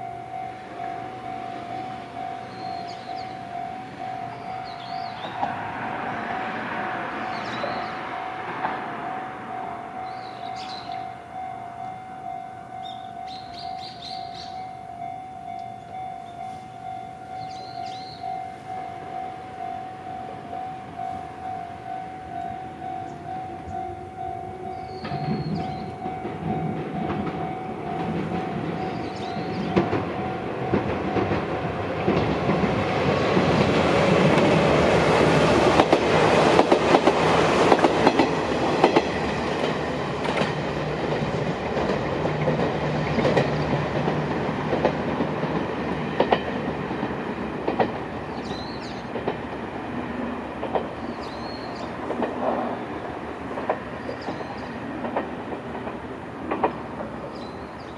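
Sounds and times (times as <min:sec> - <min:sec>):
electric train passing: 0:00.0 - 0:57.9
wheels clacking over rail joints: 0:16.8 - 0:57.9.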